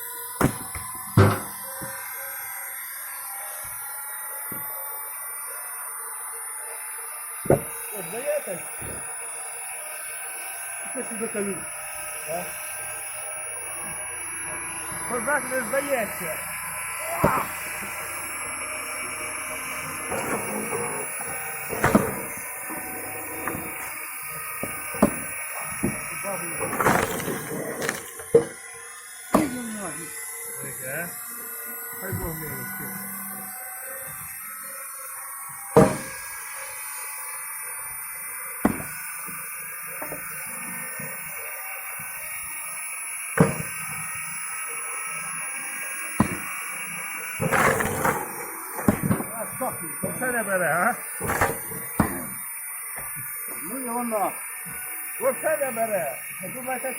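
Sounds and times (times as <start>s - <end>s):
motor whining: 0.0s - 56.9s
maul striking a log: 0.4s - 2.0s, 7.4s - 7.9s, 8.8s - 9.1s, 17.0s - 18.1s, 20.0s - 28.6s, 29.3s - 29.8s, 35.8s - 36.3s, 38.6s - 40.4s, 43.4s - 43.9s, 46.2s - 46.7s, 47.4s - 49.4s, 51.2s - 52.4s
wood knocking and cracking: 0.4s - 2.0s, 8.8s - 9.1s, 20.0s - 28.6s, 29.4s - 29.6s, 35.8s - 36.2s, 38.7s - 39.4s, 40.0s - 40.4s, 43.4s - 43.8s, 46.2s - 46.6s, 47.4s - 48.2s, 51.2s - 52.4s.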